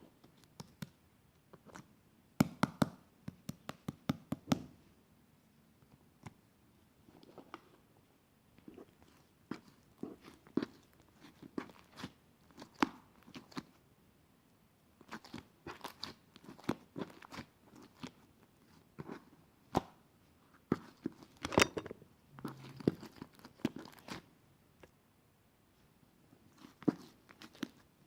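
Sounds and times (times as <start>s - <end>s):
crunchy food being chewed: 8.6s - 13.8s, 15.0s - 19.3s, 22.4s - 24.3s, 26.5s - 27.9s.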